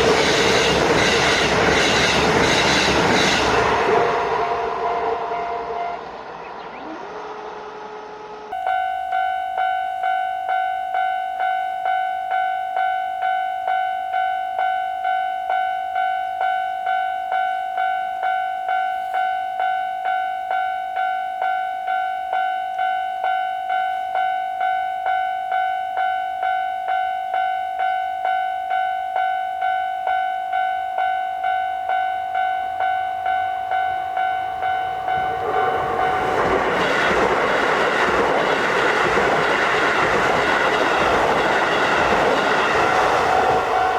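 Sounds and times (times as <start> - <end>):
approaching train rushing: 0.0 - 10.6, 32.8 - 43.9
level crossing warning bell: 8.5 - 43.9.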